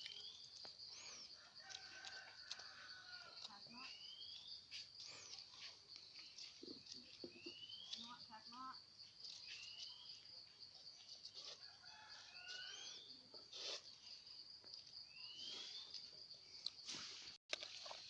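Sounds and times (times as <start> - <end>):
bird chirps: 3.7 - 8.7, 9.3 - 10.3, 15.0 - 16.1.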